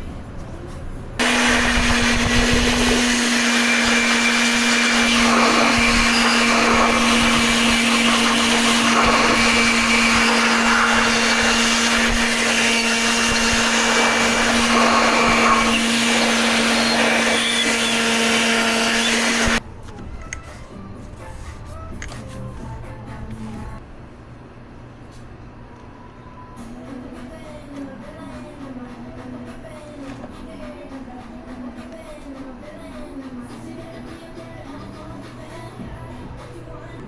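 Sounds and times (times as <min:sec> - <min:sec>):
electric motor whining: 0:01.2 - 0:19.6.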